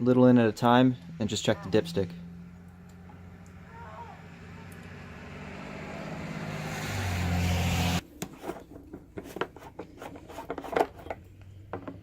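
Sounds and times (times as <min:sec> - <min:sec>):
vehicle passing on road: 0:00.0 - 0:08.0.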